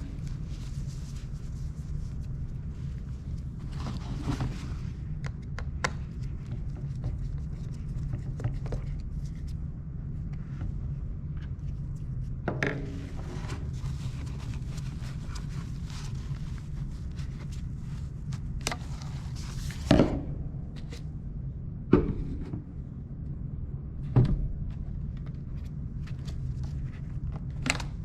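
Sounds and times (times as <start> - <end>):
low rumble: 8.9 - 28.0.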